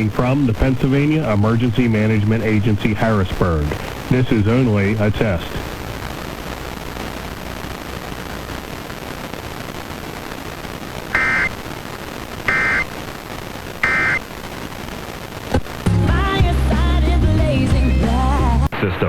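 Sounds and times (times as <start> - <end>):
radio hiss: 0.0 - 16.9, 18.6 - 19.0
digital data tone bursts: 11.1 - 11.5, 12.5 - 12.9, 13.8 - 14.2.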